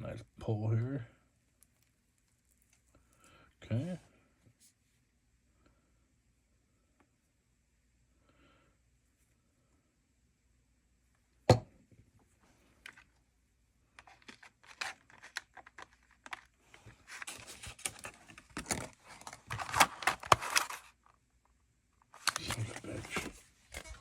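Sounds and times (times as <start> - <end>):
plastic packaging crinkling: 14.0 - 20.9.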